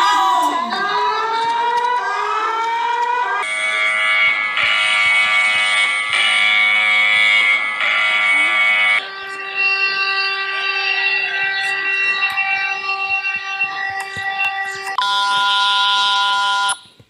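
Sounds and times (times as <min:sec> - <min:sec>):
buzzy stack of alarm tones: 0:00.0 - 0:16.9.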